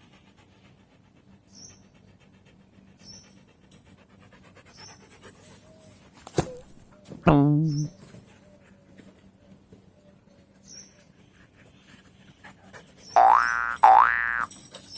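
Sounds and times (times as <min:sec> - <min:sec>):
dog panting: 0:00.0 - 0:05.8, 0:11.0 - 0:13.2.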